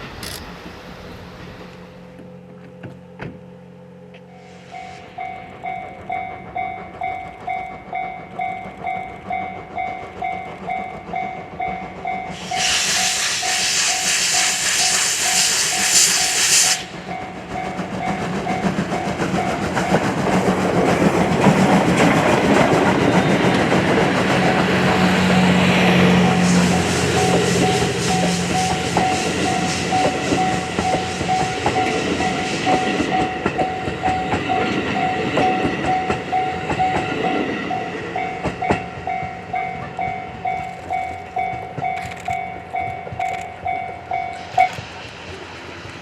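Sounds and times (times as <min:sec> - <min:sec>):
train passing: 0:00.0 - 0:46.0
level-crossing alarm dinging: 0:04.3 - 0:12.7, 0:22.8 - 0:44.8
steam locomotive hissing: 0:04.3 - 0:46.0.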